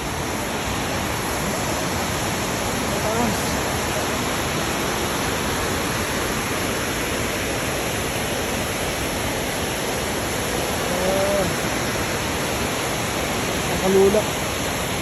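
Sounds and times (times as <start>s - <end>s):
waterfall rushing: 0.0s - 15.0s
person exclaiming: 10.8s - 11.7s.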